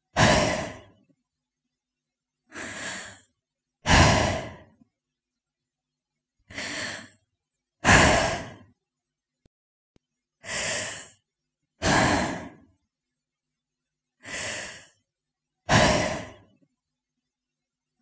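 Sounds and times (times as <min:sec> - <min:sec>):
woman breathing: 0:00.1 - 0:01.0, 0:02.5 - 0:04.8, 0:06.5 - 0:07.2, 0:07.8 - 0:08.7, 0:10.4 - 0:11.2, 0:11.8 - 0:12.7, 0:14.2 - 0:15.0, 0:15.7 - 0:16.6.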